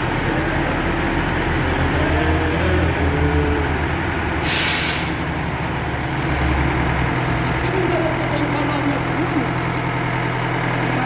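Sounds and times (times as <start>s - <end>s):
diesel engine running: 0.0s - 11.0s
air hiss: 4.4s - 5.2s.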